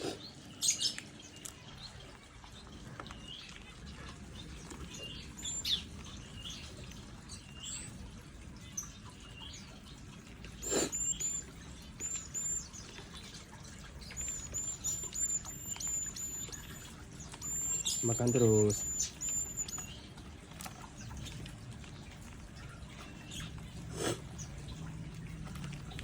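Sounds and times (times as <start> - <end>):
bird chirping and whistling: 4.9 - 6.6, 10.6 - 20.0.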